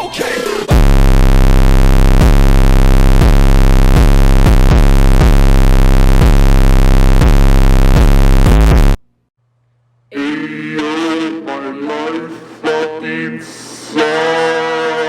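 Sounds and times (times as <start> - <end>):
distorted electronic music: 0.0 - 9.0.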